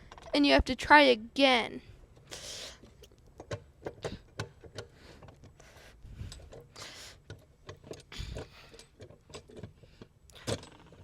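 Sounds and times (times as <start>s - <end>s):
fittings clicking and knocking: 2.8s - 5.6s, 6.3s - 11.0s.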